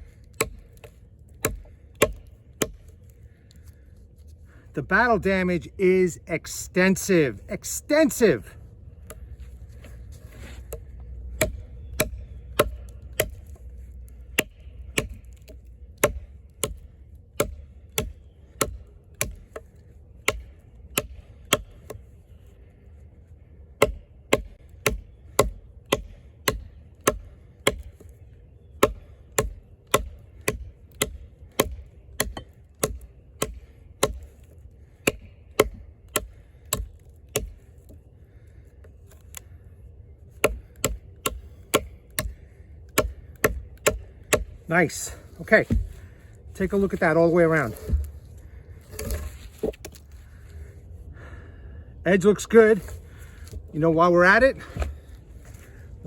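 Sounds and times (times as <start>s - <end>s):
knife chopping into log: 28.8s - 34.2s, 47.6s - 48.2s, 48.9s - 50.0s.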